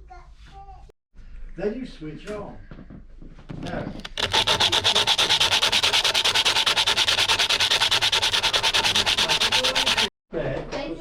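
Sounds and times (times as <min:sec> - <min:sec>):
sandpaper rasping on metal: 0:04.0 - 0:10.1.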